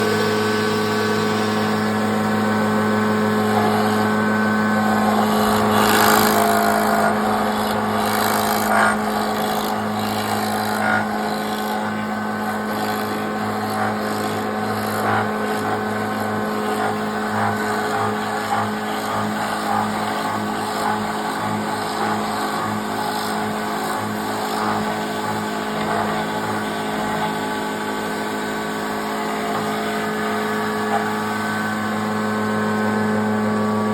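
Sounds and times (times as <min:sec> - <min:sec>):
power tool motor drilling wood: 0:00.1 - 0:33.9
short cutting noises: 0:03.4 - 0:12.0.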